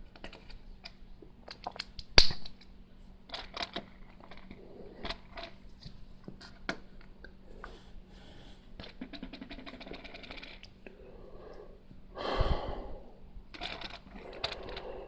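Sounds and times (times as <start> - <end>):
plastic bricks clicking and rattling: 13.6 - 14.9.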